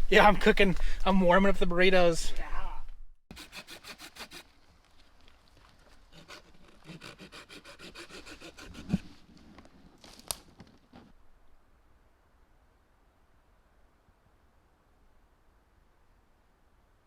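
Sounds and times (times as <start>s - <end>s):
rhythmic scraping strokes: 3.3s - 4.4s.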